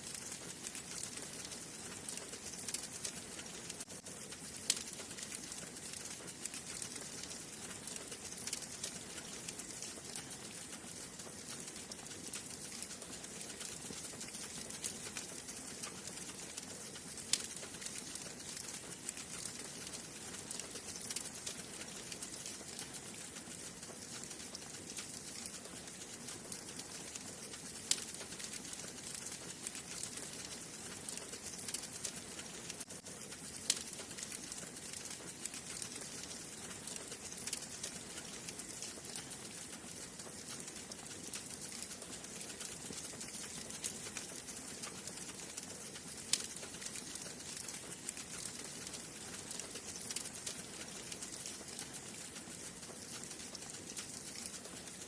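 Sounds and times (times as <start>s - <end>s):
wood fire crackling and popping: 0.0s - 55.0s.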